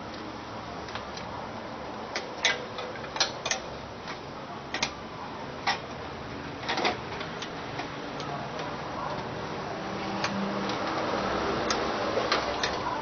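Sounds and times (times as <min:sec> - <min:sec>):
small parts clicking and tapping: 0:02.1 - 0:05.0.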